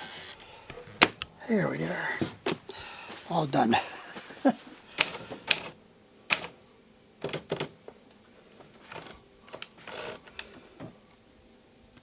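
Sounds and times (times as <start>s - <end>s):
manual typewriter keystrokes: 6.3s - 6.6s.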